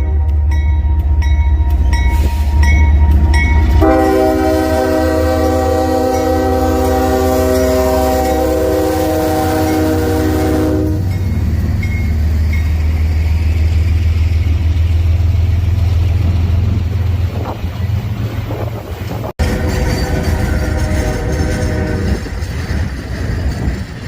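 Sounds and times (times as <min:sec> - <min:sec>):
train rumbling: 0:00.0 - 0:24.0
locomotive air horn chord: 0:03.8 - 0:11.2, 0:19.4 - 0:22.2.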